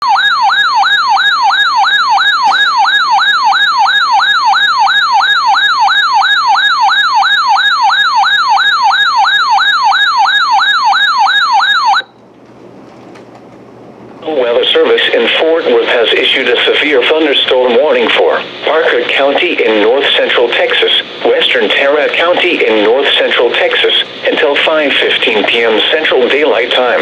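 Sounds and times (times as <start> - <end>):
electronic yelp siren: 0.0 - 12.2.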